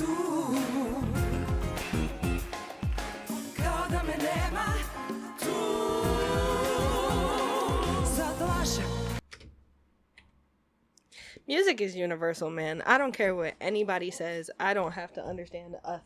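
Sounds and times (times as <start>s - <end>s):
singer with vibrato: 0.0s - 1.8s, 3.6s - 9.2s
band with pulsing bass: 1.0s - 2.6s, 6.0s - 9.2s.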